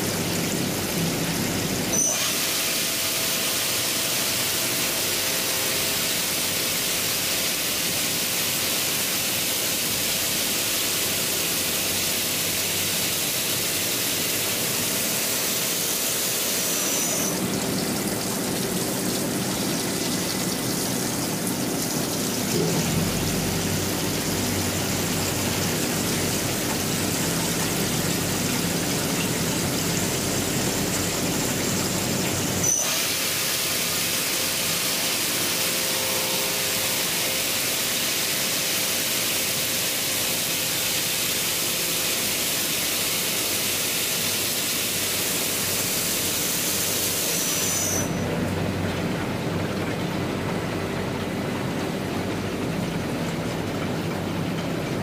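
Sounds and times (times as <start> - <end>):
coolant spray hiss: 2.2 - 17.5, 29.5 - 48.2
milling machine whir: 8.1 - 41.6.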